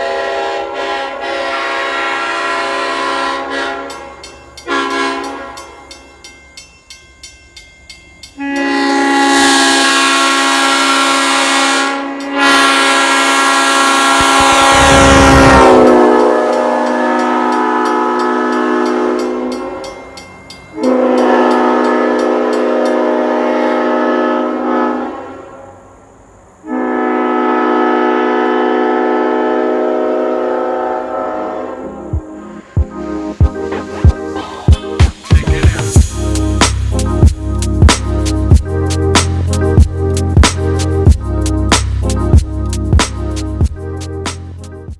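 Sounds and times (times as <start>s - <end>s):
locomotive air horn blasts: 0.0s - 5.8s, 8.4s - 20.0s, 20.8s - 25.8s, 26.6s - 34.4s.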